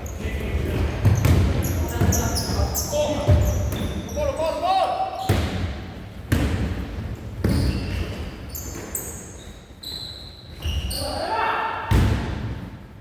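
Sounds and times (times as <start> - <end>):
sneakers squeaking: 0.0 - 12.0
basketball bouncing on gym floor: 0.7 - 4.1, 5.3 - 8.2.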